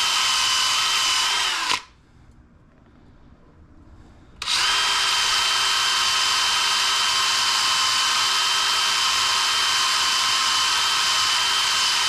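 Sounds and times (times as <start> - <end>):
electric power tool whirring: 0.0 - 1.9, 4.4 - 12.0.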